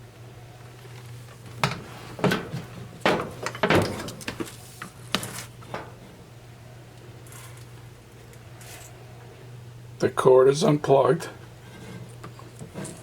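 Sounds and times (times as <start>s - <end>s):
knocks and clunks from handling dryer: 1.6s - 4.5s.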